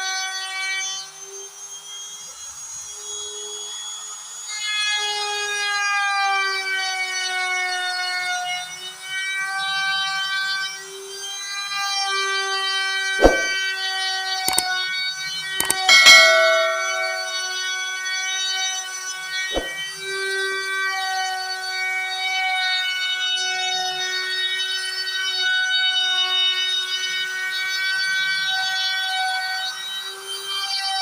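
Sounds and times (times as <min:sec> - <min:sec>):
sharp click: 0:13.2 - 0:13.6, 0:15.6 - 0:17.6.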